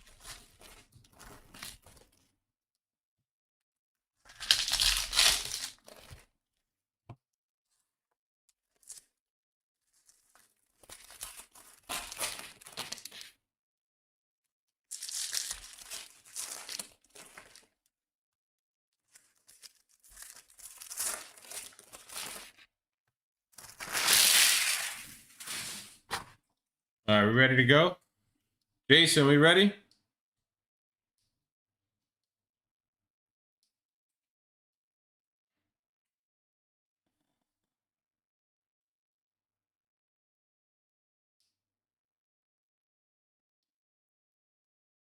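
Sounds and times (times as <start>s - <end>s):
plastic wrapping torn and crumpled: 4.3s - 6.2s, 9.9s - 13.3s, 14.9s - 17.8s, 19.0s - 22.6s, 23.6s - 26.2s.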